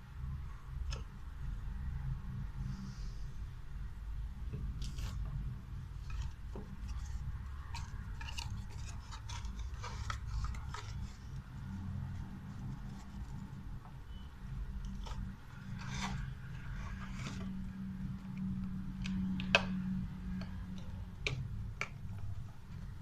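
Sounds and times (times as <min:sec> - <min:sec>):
packaging clicks and rustles: 0:06.0 - 0:11.5.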